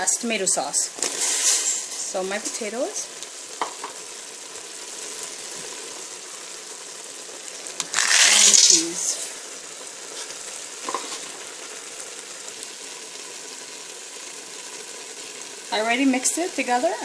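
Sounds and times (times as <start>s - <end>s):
meat sizzling in a hot pan: 0.0s - 17.0s
vegetables tipped into sizzling pan: 1.0s - 2.6s, 3.2s - 4.5s, 7.4s - 9.4s, 10.1s - 12.0s.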